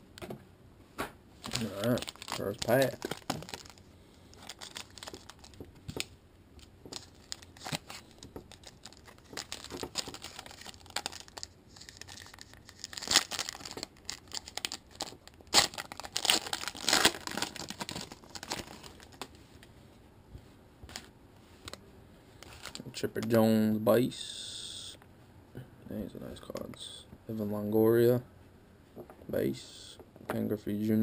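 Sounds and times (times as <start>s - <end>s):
plastic wrapper tearing and crinkling: 1.4s - 19.4s, 22.4s - 22.9s.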